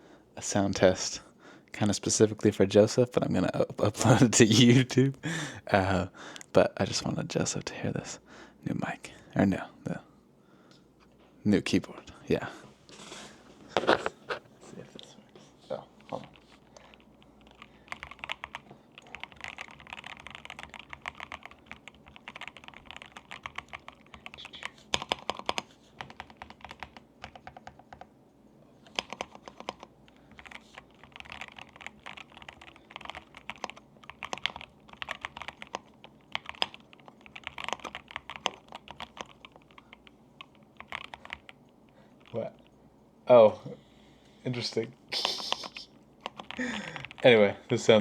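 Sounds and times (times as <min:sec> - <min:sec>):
typing on mechanical keyboard: 0:16.0 - 0:28.1, 0:28.9 - 0:41.6, 0:45.3 - 0:47.3.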